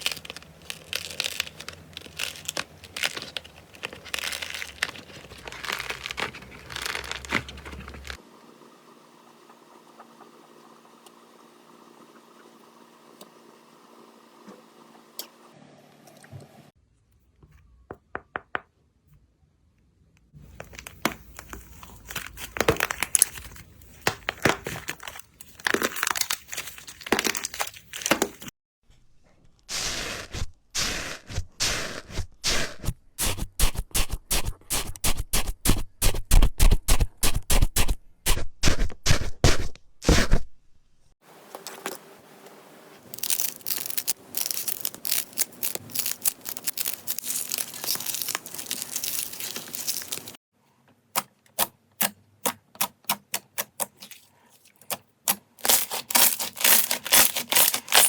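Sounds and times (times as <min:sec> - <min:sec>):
slime crackling and popping: 0:00.0 - 0:08.2, 0:43.2 - 0:50.4, 0:55.7 - 0:58.0.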